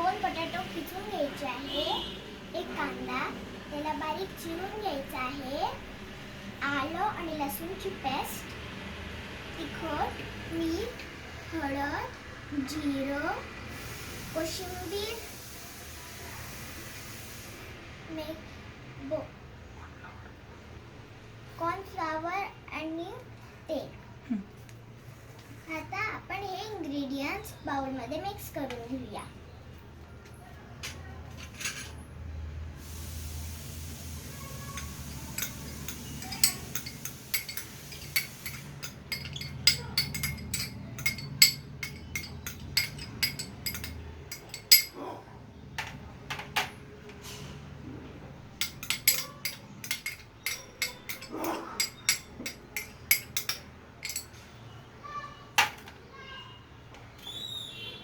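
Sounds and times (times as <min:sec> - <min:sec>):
spoon scraping a bowl: 0:34.5 - 0:44.9, 0:48.6 - 0:54.3.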